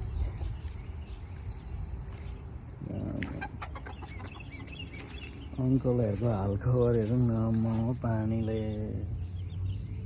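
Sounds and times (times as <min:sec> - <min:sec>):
chickens clucking and peeping: 0:00.0 - 0:10.0.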